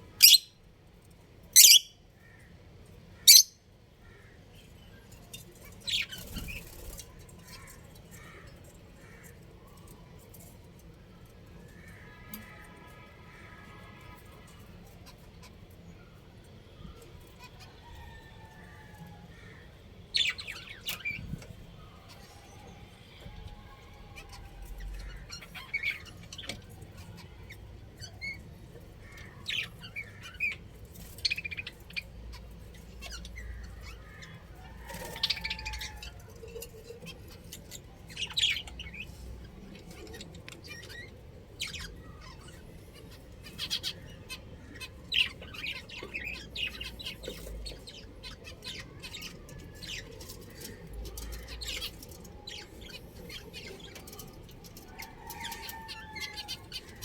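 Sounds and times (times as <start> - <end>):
budgerigars chirping and squawking: 0.0 - 0.6, 1.6 - 2.1, 3.2 - 3.6, 5.4 - 9.3, 19.4 - 22.4, 24.0 - 57.0.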